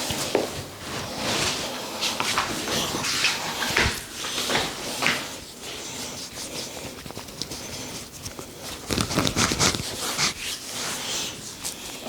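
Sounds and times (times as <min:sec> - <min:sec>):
hands rubbing and patting hair: 0:06.0 - 0:12.0.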